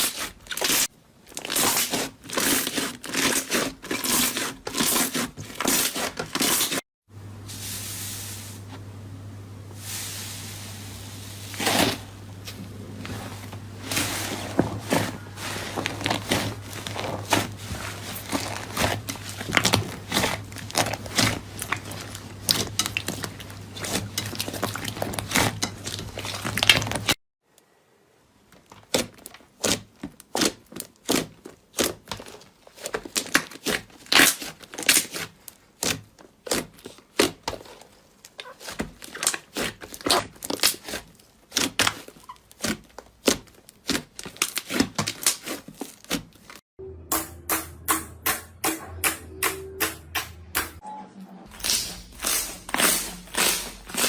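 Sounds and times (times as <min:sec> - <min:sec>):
rapid clicking and crinkling: 0:13.5 - 0:27.2.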